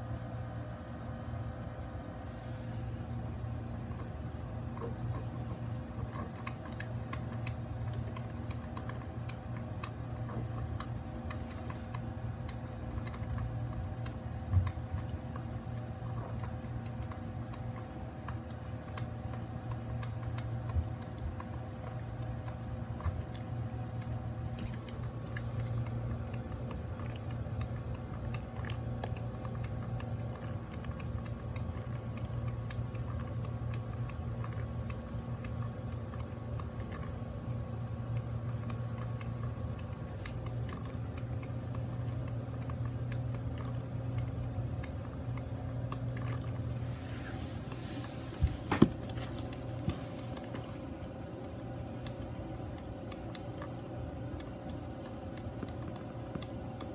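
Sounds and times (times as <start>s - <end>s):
coffee maker humming: 0.0s - 56.9s
small ticks: 52.0s - 56.9s.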